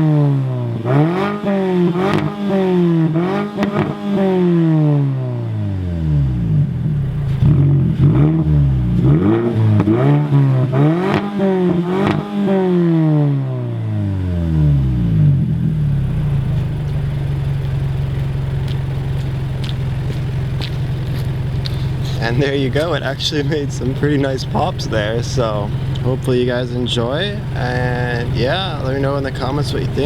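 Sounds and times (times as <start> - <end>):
car engine revving: 0.0 - 30.0
car engine idling: 5.9 - 12.0, 14.4 - 30.0
exhaust pops: 6.5 - 12.4, 15.2 - 30.0.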